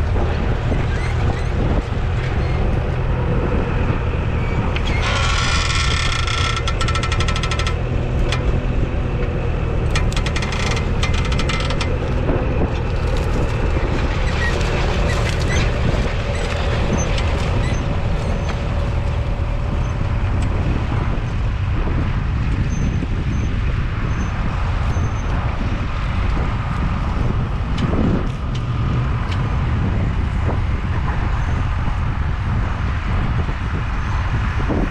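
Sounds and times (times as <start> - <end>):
tractor diesel engine running: 0.0 - 33.8
plough clattering: 4.4 - 20.5.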